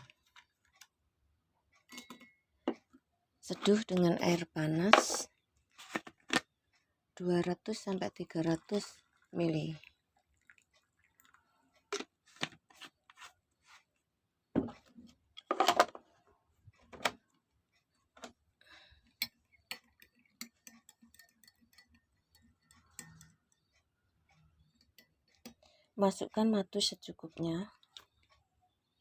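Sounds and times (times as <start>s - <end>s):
utensils clicking against glassware: 19.2s - 23.4s.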